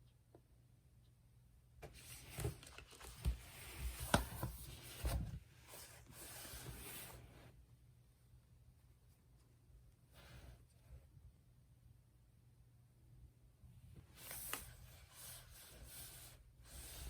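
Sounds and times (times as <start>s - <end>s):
rustling and handling noise: 1.8s - 7.7s, 13.9s - 17.0s.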